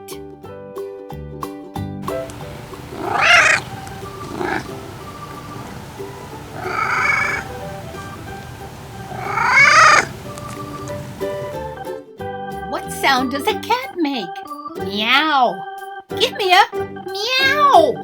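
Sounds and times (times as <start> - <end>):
cat meowing: 2.1 - 11.7
soft background music: 2.1 - 18.0.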